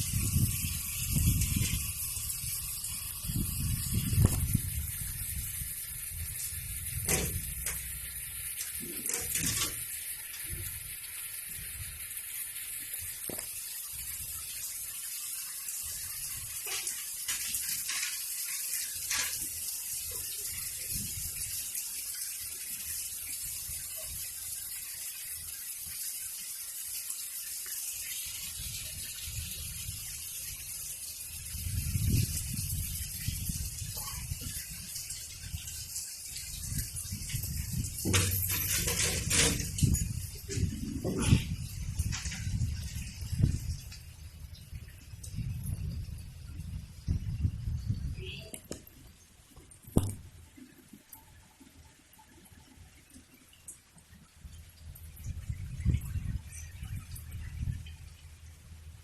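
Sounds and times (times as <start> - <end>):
heavy rain falling: 0.0 - 14.9, 15.8 - 22.7, 28.0 - 44.4.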